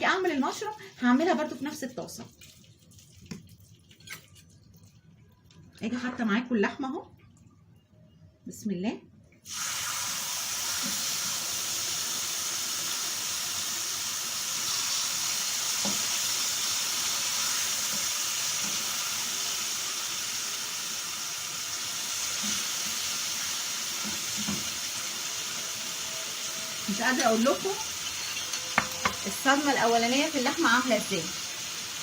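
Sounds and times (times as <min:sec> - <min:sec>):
steak sizzling in a hot pan: 0:09.5 - 0:32.0.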